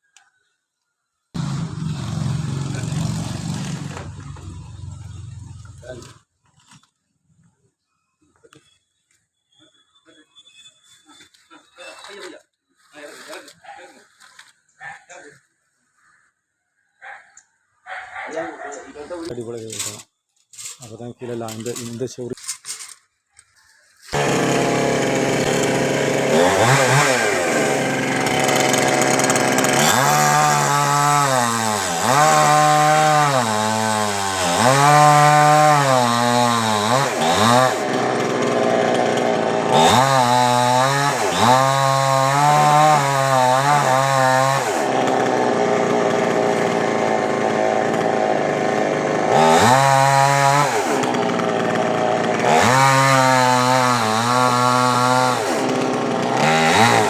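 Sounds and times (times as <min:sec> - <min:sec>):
chainsaw cutting wood: 0:01.4 - 0:06.9, 0:24.0 - 0:57.0.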